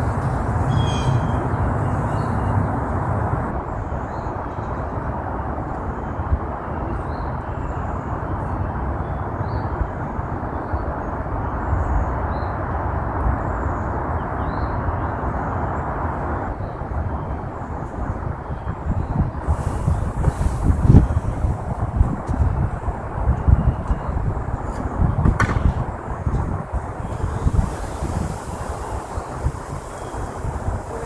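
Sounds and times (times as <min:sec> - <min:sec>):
faint bird chirps: 0:00.0 - 0:02.9
honeybees buzzing: 0:00.0 - 0:03.5, 0:26.7 - 0:31.0.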